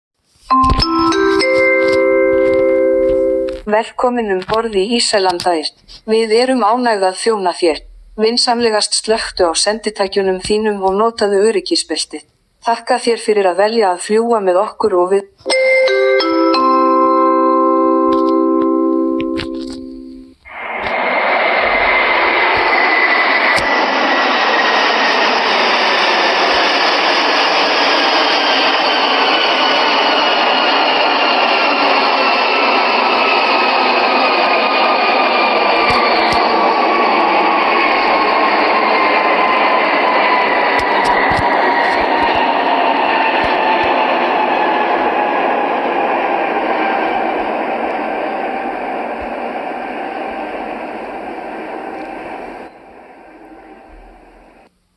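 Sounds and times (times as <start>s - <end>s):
airliner cabin noise: 0.5s - 11.2s, 15.4s - 54.7s
engine whine sliding down: 15.6s - 54.7s
airliner cabin rushing noise: 33.2s - 54.6s.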